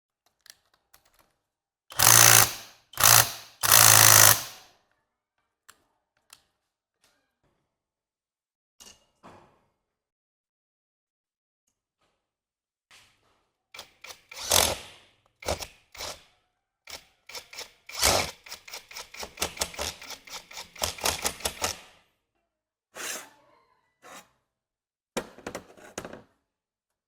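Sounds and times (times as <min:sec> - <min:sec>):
hand tool knocking and clicking: 0:01.9 - 0:04.6.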